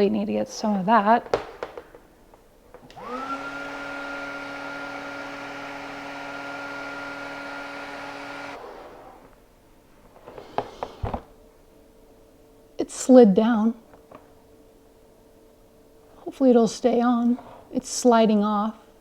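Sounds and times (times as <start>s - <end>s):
heat gun blower whirring: 2.7s - 11.3s.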